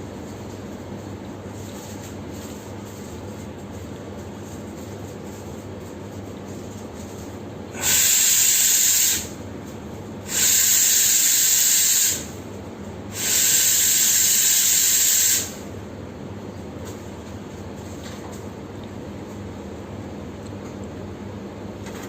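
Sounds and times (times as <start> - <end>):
steam wand hissing: 7.7 - 9.4, 10.3 - 12.4, 13.1 - 15.7.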